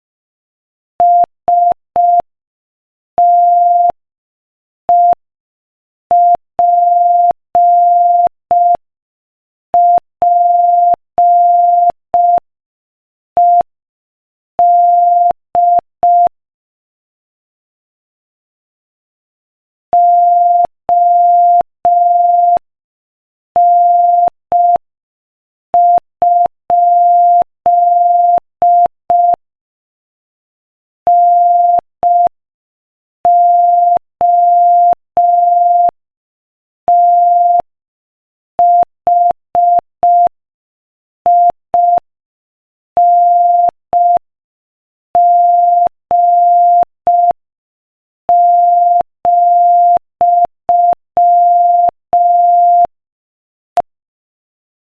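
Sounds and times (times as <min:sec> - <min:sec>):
morse code tone: 0:31.1 - 0:32.4, 0:33.3 - 0:36.0, 0:36.9 - 0:37.7, 0:38.6 - 0:40.4, 0:41.3 - 0:42.1, 0:43.0 - 0:44.2, 0:45.2 - 0:47.4, 0:48.3 - 0:52.9.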